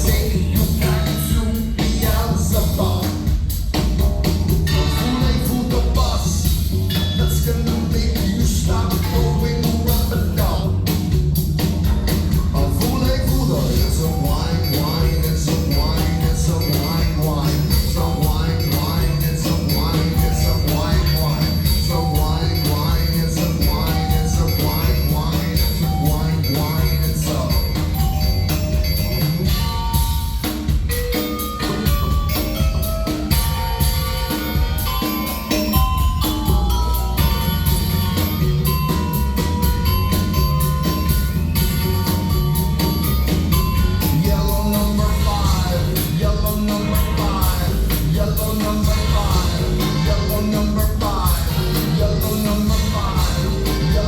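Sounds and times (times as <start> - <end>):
drums: 0.0 - 54.0
heavy bass: 0.0 - 54.0
live rock band playing: 0.0 - 54.0
bright short mallet-like notes: 12.8 - 54.0.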